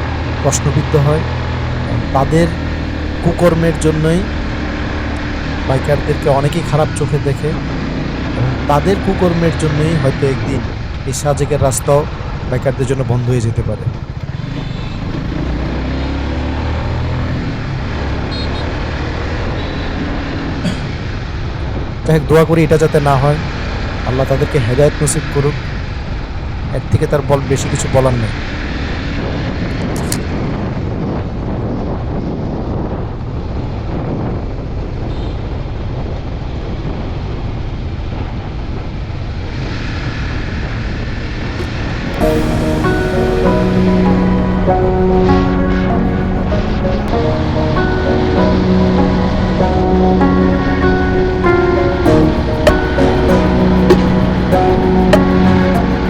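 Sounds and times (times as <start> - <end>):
motorcycle engine: 0.0 - 11.1, 13.9 - 21.4
motorcycle running at speed: 0.0 - 11.3, 13.6 - 22.0, 23.2 - 26.7, 28.4 - 56.0
wind rumble on microphone: 16.7 - 22.5, 28.2 - 42.2.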